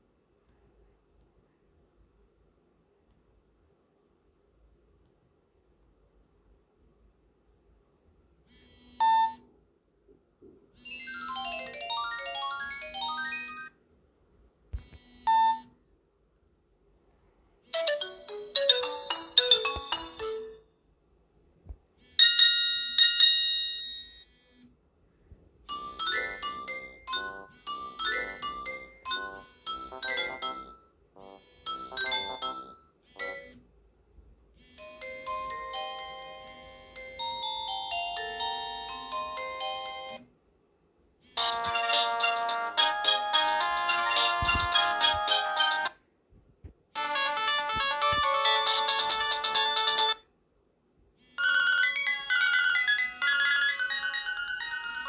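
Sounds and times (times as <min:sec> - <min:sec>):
electronic ringtone beeps: 0:08.5 - 0:09.4, 0:10.8 - 0:13.8, 0:14.9 - 0:15.6, 0:17.8 - 0:20.7, 0:22.1 - 0:24.6, 0:25.7 - 0:33.6, 0:34.6 - 0:40.2, 0:41.4 - 0:45.9, 0:48.0 - 0:50.2, 0:51.3 - 0:55.0
ringtone with held notes: 0:10.8 - 0:13.8, 0:14.8 - 0:15.7, 0:17.7 - 0:20.8, 0:22.0 - 0:24.6, 0:25.7 - 0:33.6, 0:34.6 - 0:40.2, 0:41.3 - 0:46.0, 0:47.0 - 0:50.2, 0:51.2 - 0:55.0.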